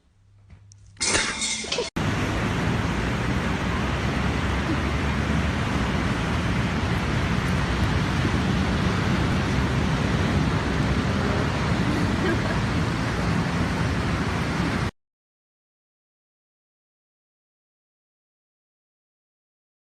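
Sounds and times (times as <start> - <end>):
loud steady rushing noise: 2.0 - 14.9.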